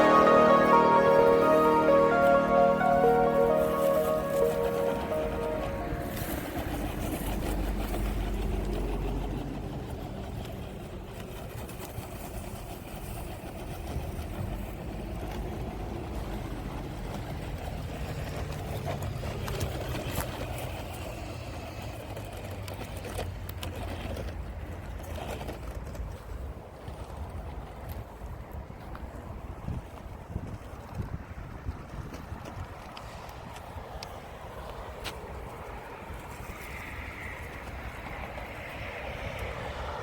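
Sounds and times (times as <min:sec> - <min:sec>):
toy truck motor whirring: 0:18.3 - 0:26.0.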